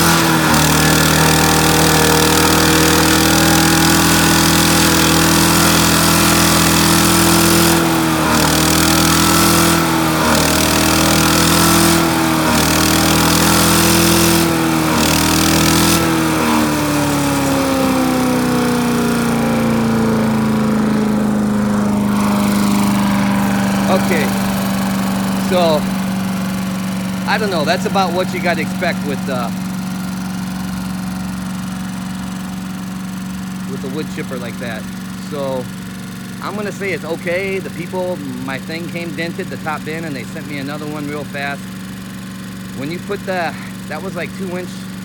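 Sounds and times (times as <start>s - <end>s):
wood chipper engine running: 0.0s - 45.0s.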